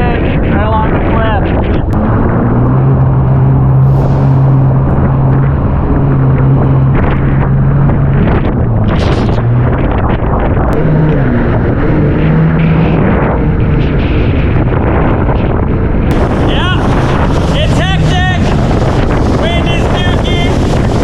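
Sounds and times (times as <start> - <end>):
wind on microphone: 0.0 - 21.0
jet ski engine running: 9.6 - 21.0.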